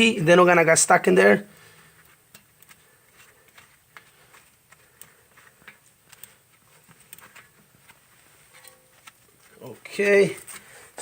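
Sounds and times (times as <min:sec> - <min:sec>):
small clicks of handled tools: 0:02.0 - 0:07.5.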